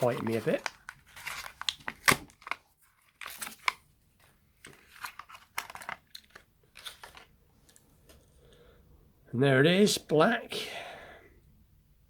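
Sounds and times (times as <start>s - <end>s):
plastic packaging being torn open: 0.0s - 3.8s.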